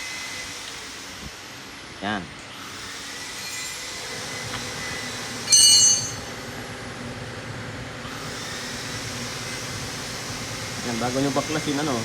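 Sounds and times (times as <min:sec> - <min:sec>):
steady background hum: 0:00.0 - 0:12.0
high-pitched metallic ring: 0:03.4 - 0:04.0, 0:05.4 - 0:06.4.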